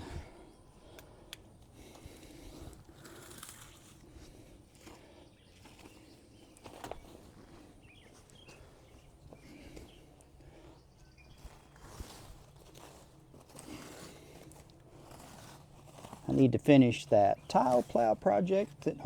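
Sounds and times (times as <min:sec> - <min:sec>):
faint rustling: 0:00.8 - 0:19.0
faint bird chirps: 0:05.3 - 0:11.8.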